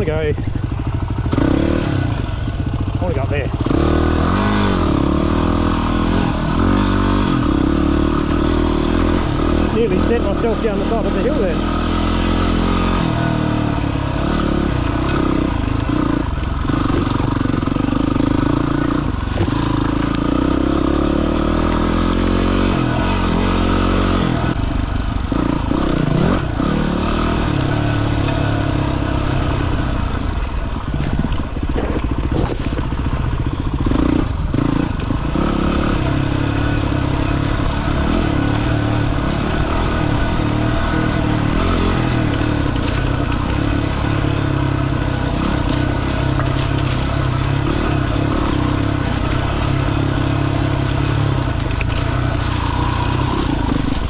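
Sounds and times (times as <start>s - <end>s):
dirt bike engine revving: 0.0s - 24.6s, 25.2s - 54.0s
bike clattering over rough ground: 14.8s - 20.8s, 30.3s - 33.7s, 40.2s - 54.0s.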